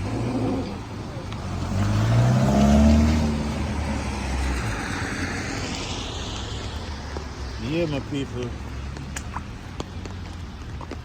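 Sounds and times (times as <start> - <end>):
vehicle engine speeding up passing: 0.0 - 6.8.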